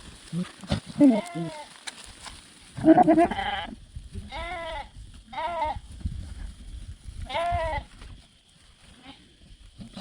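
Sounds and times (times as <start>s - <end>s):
goat bleating: 0.3s - 1.8s, 2.8s - 5.8s, 7.2s - 8.0s.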